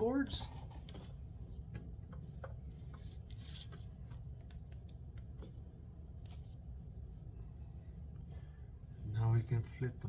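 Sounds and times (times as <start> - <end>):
steady low hum: 0.0 - 10.0
paper and card rustling: 0.2 - 6.6.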